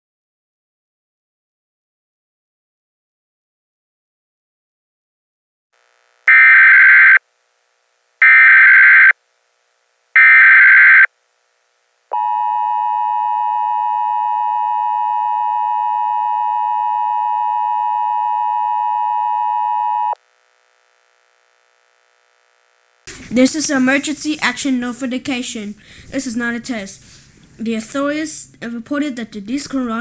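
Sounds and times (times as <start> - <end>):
two-tone attention signal: 12.2 - 20.2.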